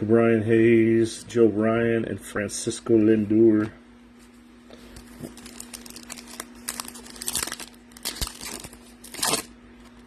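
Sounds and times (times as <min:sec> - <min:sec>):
foil wrapper crinkling and tearing: 0:04.9 - 0:10.0.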